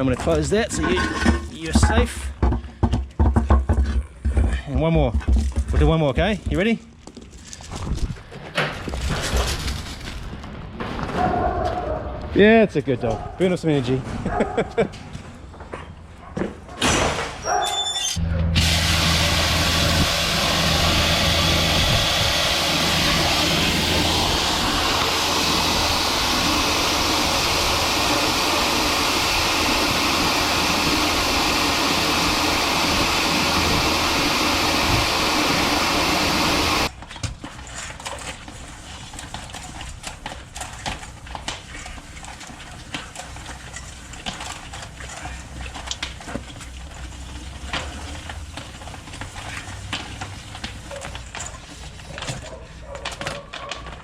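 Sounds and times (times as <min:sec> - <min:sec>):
drain jetter engine running: 0:18.2 - 0:36.9
high-pressure water hissing: 0:18.5 - 0:36.9.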